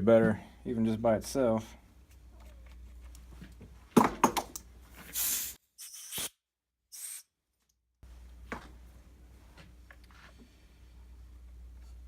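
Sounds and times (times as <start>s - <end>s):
short hissing bursts: 5.1s - 7.3s.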